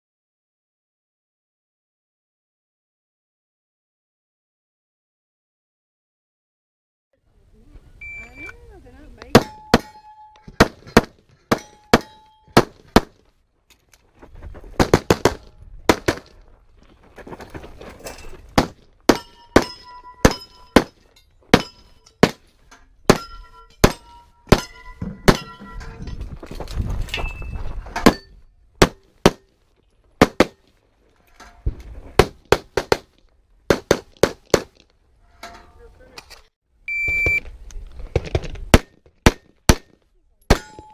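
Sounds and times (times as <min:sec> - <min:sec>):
bullets ringing on steel targets: 0:09.3 - 0:10.6, 0:11.5 - 0:12.6, 0:19.1 - 0:22.4, 0:23.1 - 0:26.0, 0:40.5 - 0:40.9.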